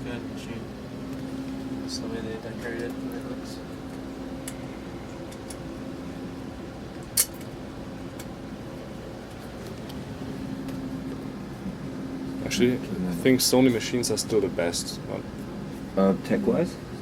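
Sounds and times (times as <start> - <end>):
steady background hum: 0.0 - 17.0
sharp click: 7.2 - 7.5.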